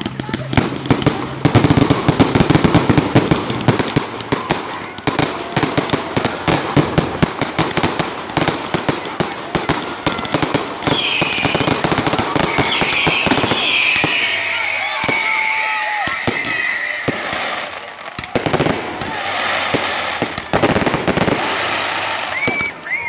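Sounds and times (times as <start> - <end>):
fireworks crackling and banging: 0.0 - 23.0.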